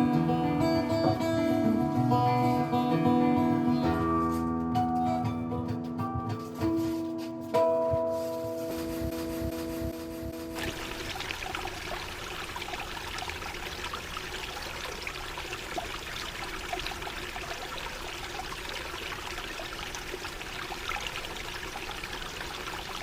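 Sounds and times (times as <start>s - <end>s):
water trickling: 8.7s - 23.0s.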